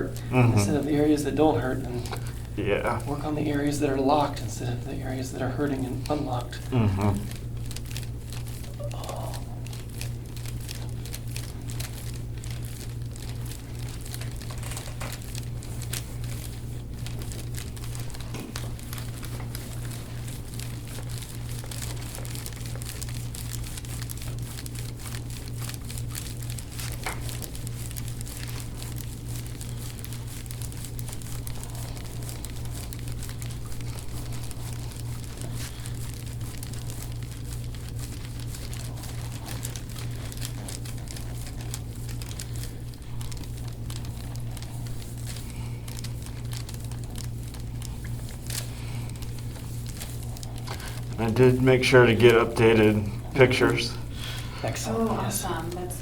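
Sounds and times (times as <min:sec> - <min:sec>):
massage rustling and crinkling: 0:00.0 - 0:56.0.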